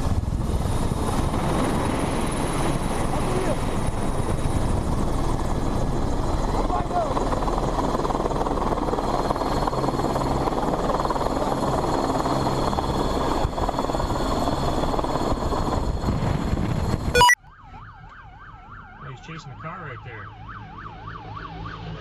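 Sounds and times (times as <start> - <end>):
helicopter rotor and engine: 0.0 - 17.1
wailing siren: 17.2 - 19.2, 20.2 - 22.0.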